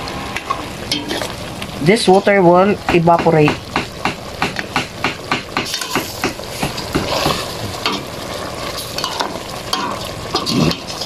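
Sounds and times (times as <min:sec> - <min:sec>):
liquid sizzling: 0:00.0 - 0:11.0
utensil scraping a pot: 0:06.8 - 0:11.0.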